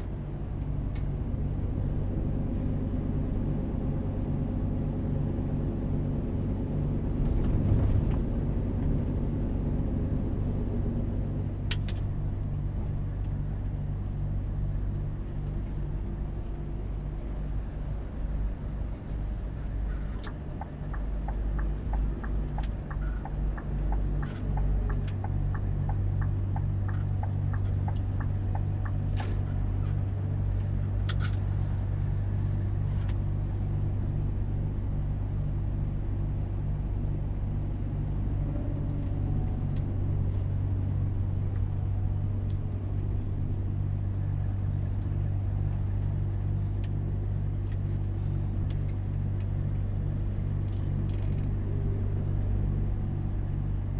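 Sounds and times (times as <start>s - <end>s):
truck engine droning: 0.0s - 53.9s
regular ticking: 20.2s - 31.2s.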